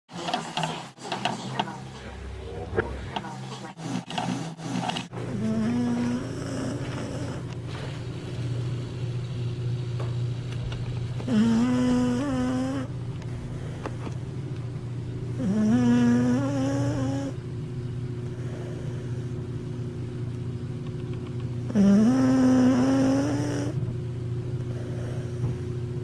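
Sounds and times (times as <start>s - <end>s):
dog snoring: 3.9s - 8.0s, 11.2s - 14.2s, 15.3s - 17.4s, 18.3s - 19.4s, 21.7s - 23.9s, 24.6s - 25.8s
dog moaning: 5.2s - 7.6s, 11.2s - 13.9s, 15.4s - 17.4s, 21.7s - 23.8s.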